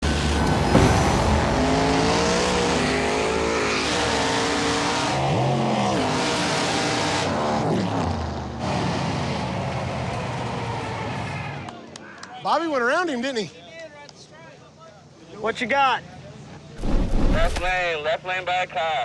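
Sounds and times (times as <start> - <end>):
drag racing cars at full throttle: 0.0 - 12.0, 16.4 - 17.9.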